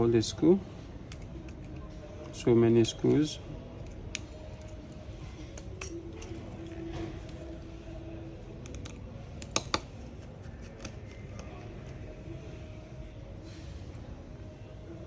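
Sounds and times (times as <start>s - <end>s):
low background hum: 0.0s - 15.0s
metal tools clicking on phone: 8.6s - 10.1s.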